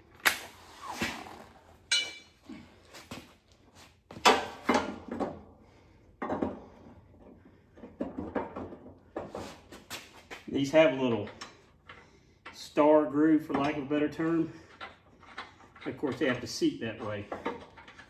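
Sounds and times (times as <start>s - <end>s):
metal clanks of blade and tools: 1.9s - 2.4s.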